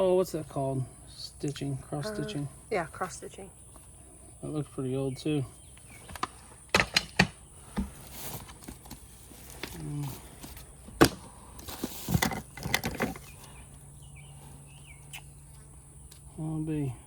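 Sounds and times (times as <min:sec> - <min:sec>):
person murmuring: 0:01.9 - 0:02.5
sharp clicks and knocks: 0:06.1 - 0:07.4.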